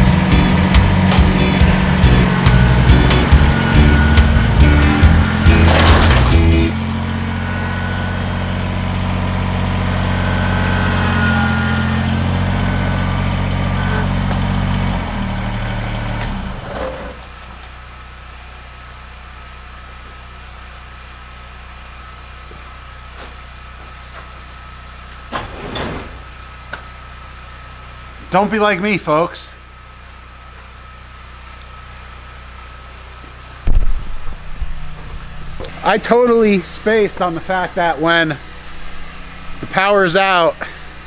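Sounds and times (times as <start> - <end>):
diesel tractor engine running: 0.0 - 41.0.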